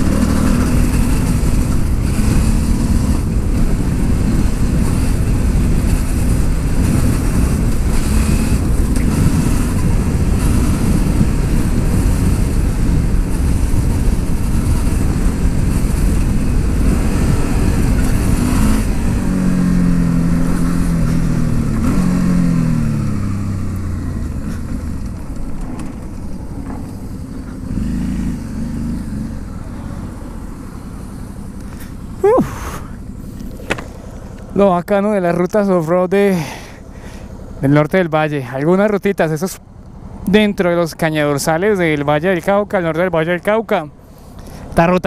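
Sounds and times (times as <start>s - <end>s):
vehicle driving on dirt road: 0.0s - 45.0s.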